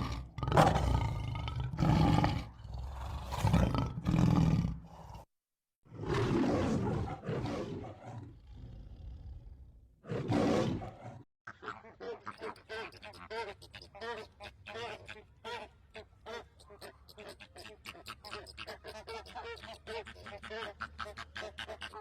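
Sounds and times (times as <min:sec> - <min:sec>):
large animal roaring: 0:00.0 - 0:05.2.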